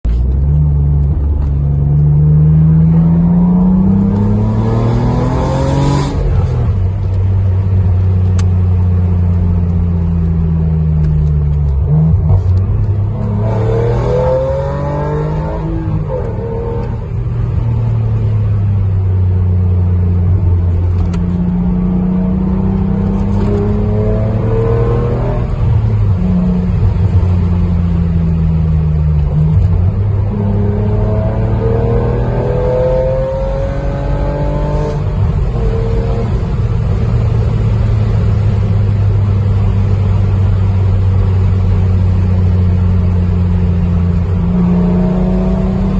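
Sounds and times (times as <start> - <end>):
car engine revving through gears: 0.1 - 45.9.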